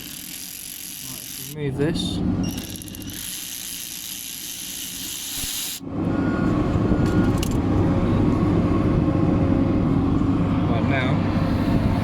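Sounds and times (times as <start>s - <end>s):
motor vehicle rumbling: 5.8s - 12.0s.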